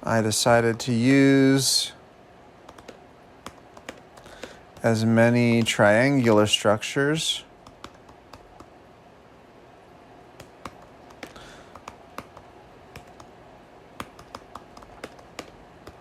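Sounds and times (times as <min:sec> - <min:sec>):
typing on computer keyboard: 0:02.7 - 0:04.9, 0:07.6 - 0:08.7, 0:10.4 - 0:13.3, 0:14.0 - 0:16.0.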